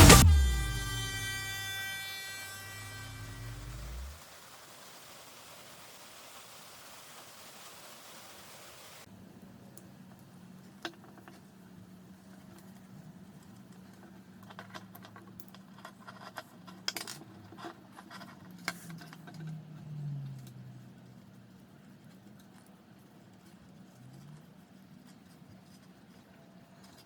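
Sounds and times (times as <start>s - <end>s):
faint steady hum: 0.0s - 10.9s.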